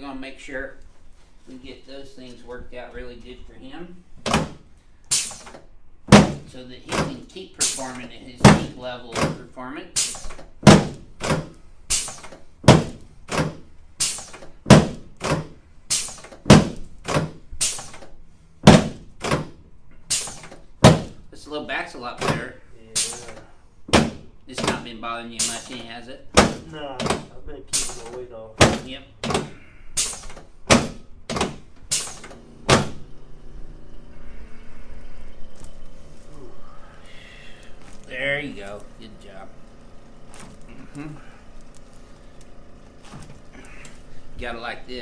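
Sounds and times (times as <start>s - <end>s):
sharp thuds: 4.2s - 9.4s, 10.0s - 18.0s, 18.6s - 21.2s, 23.0s - 33.2s
hands thumping on body: 10.6s - 11.5s, 12.7s - 13.6s, 16.5s - 17.4s, 20.8s - 21.2s.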